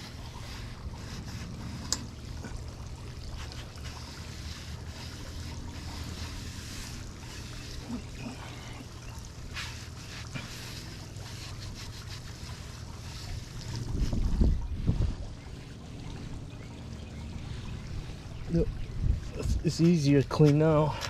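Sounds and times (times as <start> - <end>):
scraping and scrubbing: 0.0 - 2.4, 3.2 - 15.0
wind rumbling on microphone: 13.1 - 19.8.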